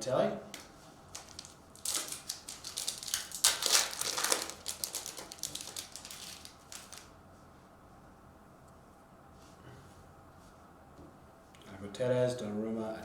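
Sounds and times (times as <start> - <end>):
wrapping rustling and crinkling: 1.1 - 7.2.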